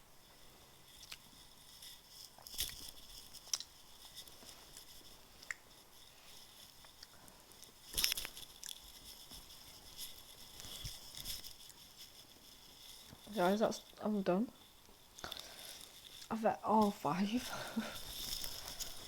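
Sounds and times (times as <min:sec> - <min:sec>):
mouth chewing wet clicks: 0:03.5 - 0:03.7.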